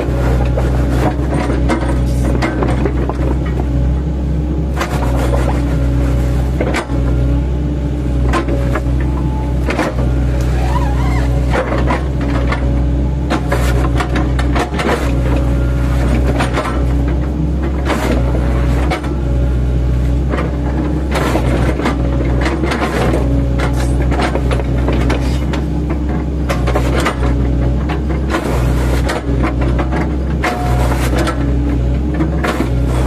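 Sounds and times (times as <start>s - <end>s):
excavator diesel engine running: 0.0s - 33.0s.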